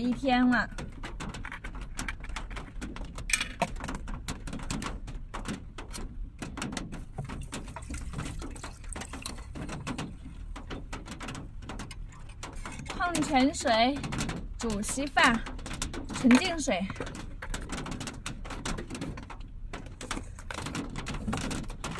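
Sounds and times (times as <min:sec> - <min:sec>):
rain on car roof: 0:00.0 - 0:21.9.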